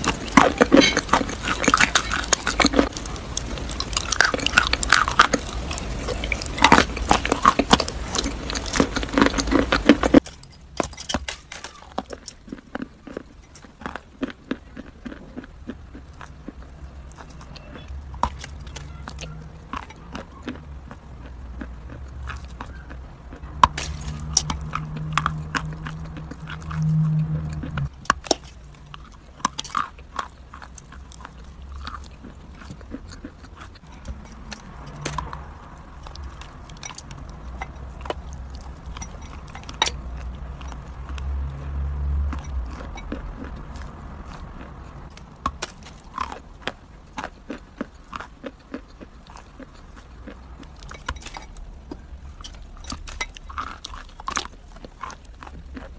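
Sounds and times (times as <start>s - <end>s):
crunchy food chewing: 0.0s - 55.9s
low rumble: 21.4s - 29.2s.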